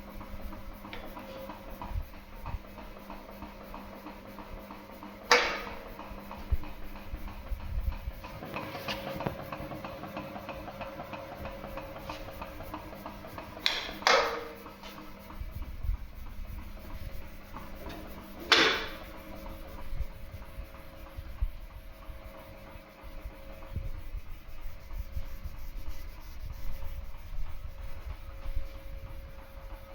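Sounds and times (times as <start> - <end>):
rubbing rasping: 11.8 - 29.9.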